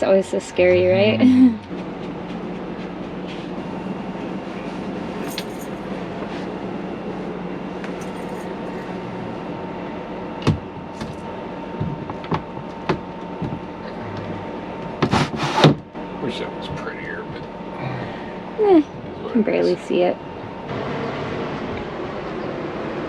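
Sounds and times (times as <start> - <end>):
steady hum and rushing noise: 0.0 - 15.1.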